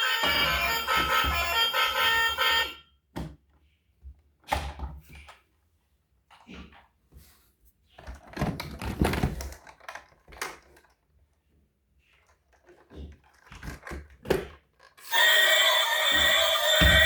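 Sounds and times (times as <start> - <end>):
electronic toy sound effect: 0.0 - 2.8, 15.0 - 17.0
plastic toys clicking and knocking: 8.0 - 11.3, 12.2 - 15.1.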